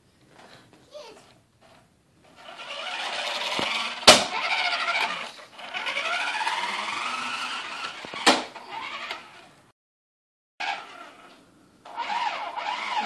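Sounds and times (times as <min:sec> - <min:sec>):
toy truck motor whining: 0:02.3 - 0:09.5, 0:10.6 - 0:13.0.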